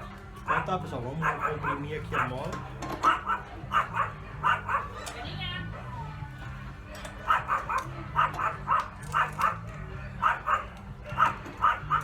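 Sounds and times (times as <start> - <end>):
dog barking: 0.4 - 5.2, 7.2 - 12.0.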